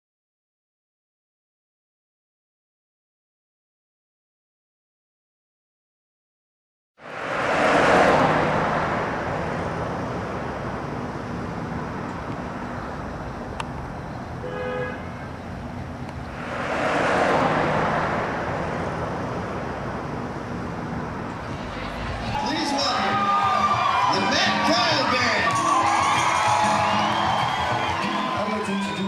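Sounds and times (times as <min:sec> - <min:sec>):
crowd cheering and applauding: 0:21.5 - 0:29.0
shout or whistle from audience: 0:22.4 - 0:29.0.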